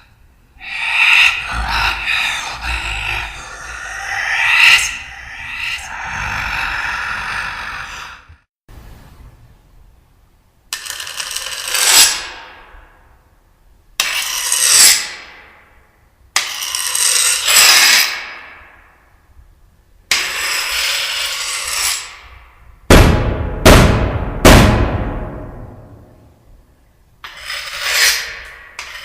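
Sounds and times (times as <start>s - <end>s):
loud metallic crashes: 22.9s - 26.2s.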